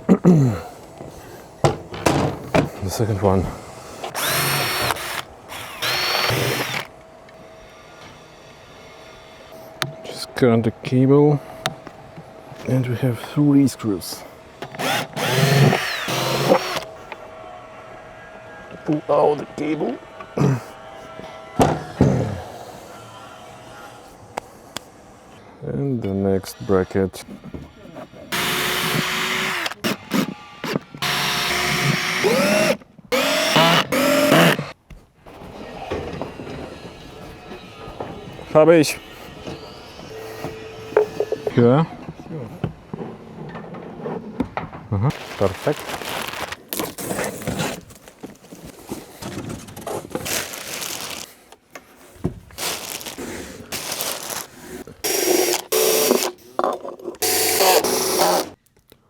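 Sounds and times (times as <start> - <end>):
handling clatter and knocks: 1.6 - 3.0
power drill driving screws: 3.9 - 6.9, 14.6 - 17.2, 28.3 - 34.8, 52.6 - 56.4, 57.2 - 58.6.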